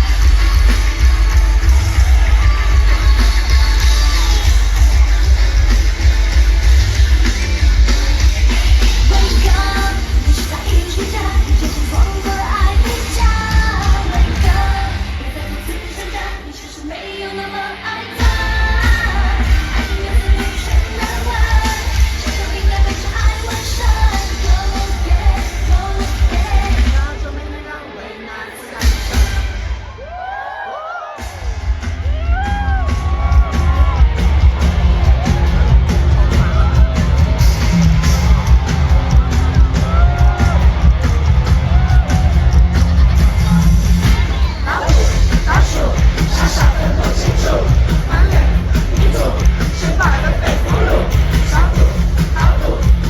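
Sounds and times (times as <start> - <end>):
heavy bass and drum beat: 0.0 - 16.5, 18.2 - 27.4, 31.1 - 53.0
live pop band: 0.0 - 53.0
woman singing: 8.4 - 29.2.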